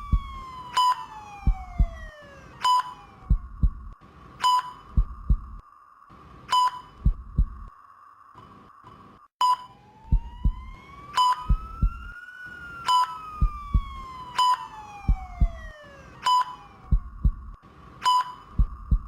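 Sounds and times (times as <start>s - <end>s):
heartbeat thumps: 0.0s - 0.6s, 1.4s - 2.2s, 3.2s - 4.0s, 4.8s - 5.6s, 6.9s - 7.7s, 10.1s - 12.2s, 13.4s - 14.2s, 15.0s - 15.8s, 16.8s - 17.6s, 18.5s - 19.0s
monitor beeps: 0.0s - 3.8s, 4.4s - 5.6s, 6.5s - 7.7s, 8.4s - 12.0s, 12.9s - 17.4s, 18.0s - 19.0s
siren-like tone: 0.0s - 3.8s, 8.4s - 19.0s
steady hum: 0.0s - 19.0s.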